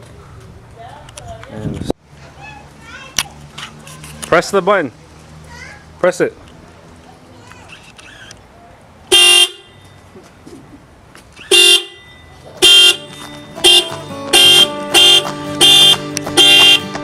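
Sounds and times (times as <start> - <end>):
two-tone car horn blasts: 9.1 - 9.8, 11.5 - 17.0
background music: 12.6 - 17.0.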